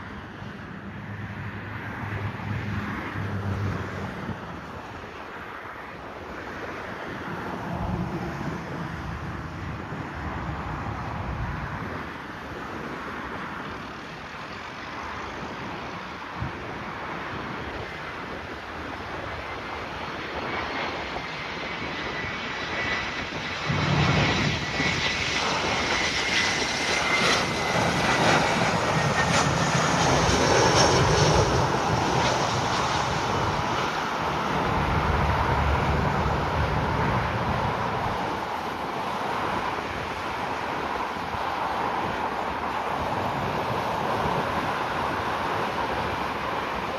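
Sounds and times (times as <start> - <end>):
jet engine whine: 0.0 - 46.9
deep jet rumble: 19.4 - 39.9.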